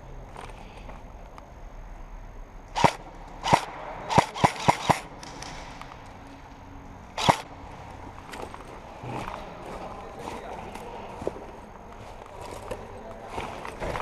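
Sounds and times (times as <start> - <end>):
airsoft gun shots: 2.8 - 5.8, 7.2 - 7.5.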